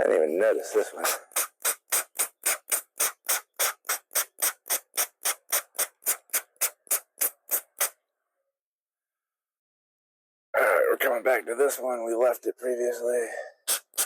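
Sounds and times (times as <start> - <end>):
trigger sprayer squirting water: 1.0 - 7.9, 13.7 - 14.0.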